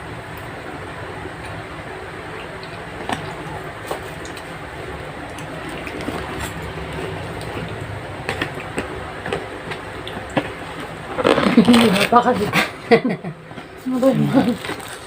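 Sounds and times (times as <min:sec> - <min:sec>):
steady background hum: 0:00.0 - 0:15.0
clicks and taps of eating: 0:02.3 - 0:10.9.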